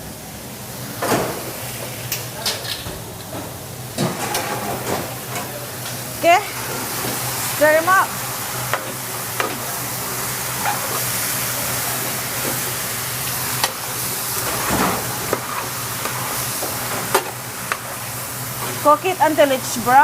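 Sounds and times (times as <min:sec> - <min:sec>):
chicken sizzling in a hot pan: 0:06.0 - 0:20.0
utensil scraping a pan: 0:13.6 - 0:18.0.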